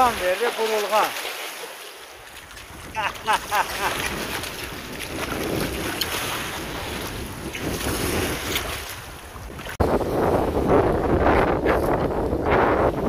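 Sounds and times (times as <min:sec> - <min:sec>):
wind buffeting microphone: 0:02.3 - 0:13.0.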